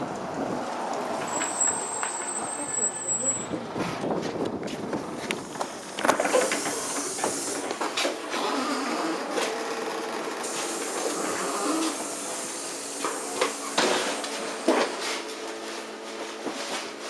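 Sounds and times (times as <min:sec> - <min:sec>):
bus steady hum: 0:00.0 - 0:17.0
air hissing: 0:05.4 - 0:08.2, 0:10.4 - 0:14.5.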